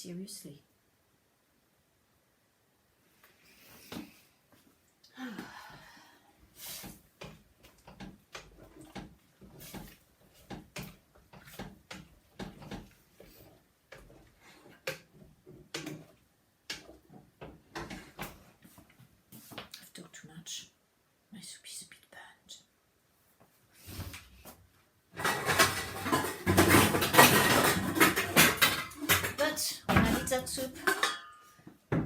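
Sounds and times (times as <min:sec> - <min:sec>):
utensils clattering against a pot: 0:25.1 - 0:31.6.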